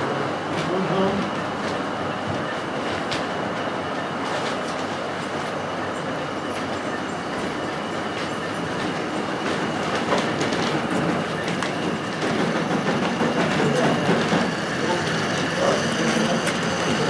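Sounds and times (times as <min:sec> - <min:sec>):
model train wheels rumbling: 0:08.8 - 0:17.0
sharp track clicks: 0:08.8 - 0:17.0.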